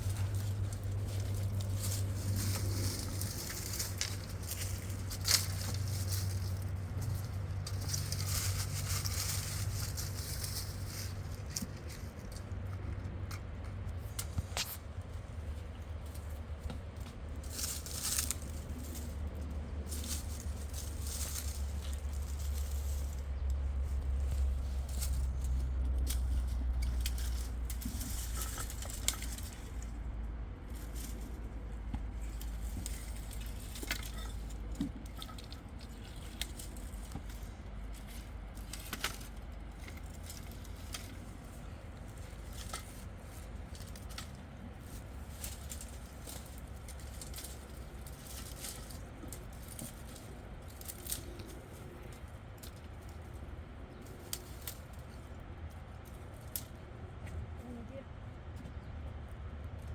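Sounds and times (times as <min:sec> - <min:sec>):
low steady rumble: 0:00.0 - 0:59.9
small clicks and crackles: 0:00.0 - 0:59.9.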